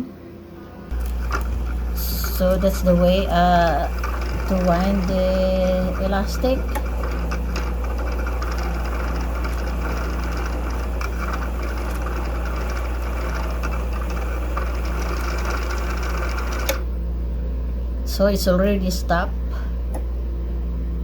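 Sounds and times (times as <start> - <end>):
sewing machine motor running: 0.9 - 16.9.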